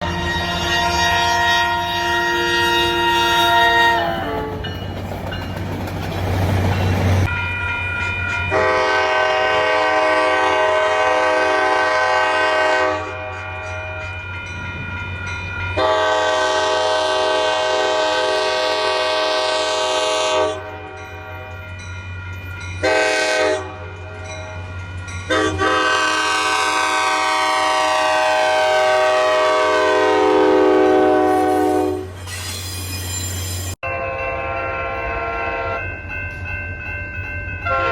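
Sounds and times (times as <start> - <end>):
locomotive air horn blasts: 0.0 - 4.6, 8.5 - 14.1, 15.8 - 21.6, 22.8 - 24.2, 25.3 - 32.2, 33.8 - 35.8, 37.6 - 37.9.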